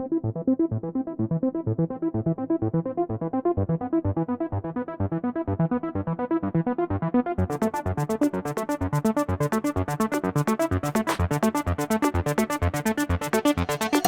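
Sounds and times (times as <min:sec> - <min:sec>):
electronic music with synth: 0:00.0 - 0:14.0.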